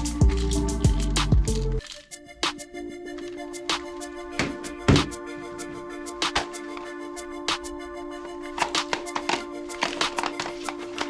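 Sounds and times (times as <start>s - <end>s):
held bass notes: 0.0s - 1.8s.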